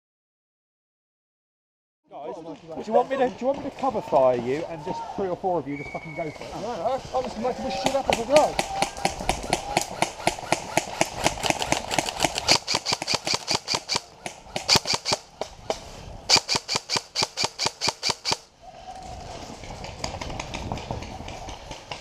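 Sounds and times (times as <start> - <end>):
airsoft rifle rapid fire: 7.8 - 15.3, 16.3 - 18.5.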